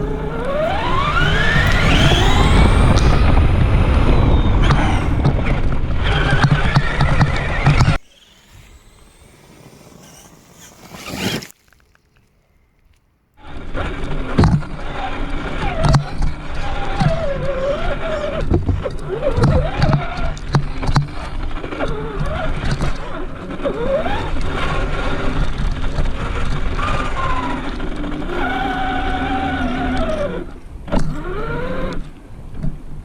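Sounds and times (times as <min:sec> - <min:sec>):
electric motor whining: 0:00.0 - 0:11.7
toy truck rattling over rough ground: 0:00.0 - 0:12.2.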